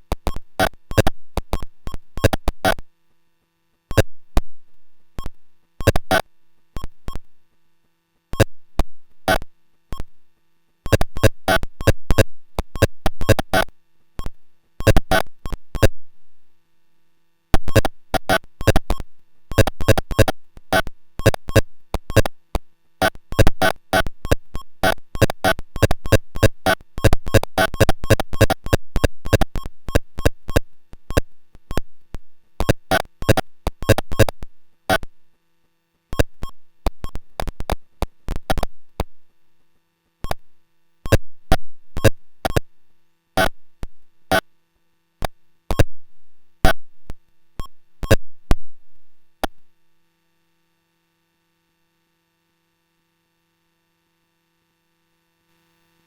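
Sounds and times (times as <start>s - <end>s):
synthesizer noise crackling clicks: 0.1s - 2.9s, 5.2s - 7.3s, 8.4s - 10.1s, 10.9s - 16.0s, 17.6s - 31.9s, 32.6s - 35.1s, 36.2s - 39.1s, 41.1s - 42.7s, 43.4s - 44.5s, 45.2s - 45.9s, 47.6s - 48.6s.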